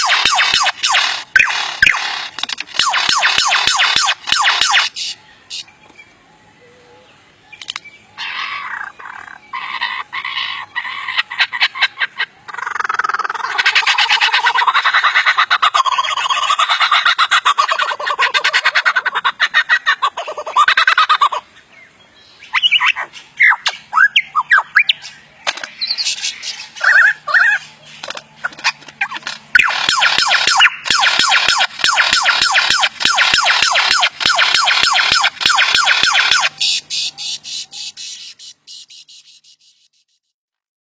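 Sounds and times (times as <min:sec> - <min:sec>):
lyrebird clicks and rattles: 0:02.0 - 0:04.2.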